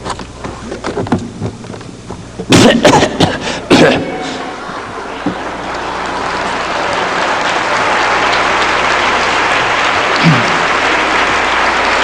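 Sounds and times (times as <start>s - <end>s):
audience applauding: 4.4s - 12.0s
short falling vocal sound: 10.2s - 10.7s.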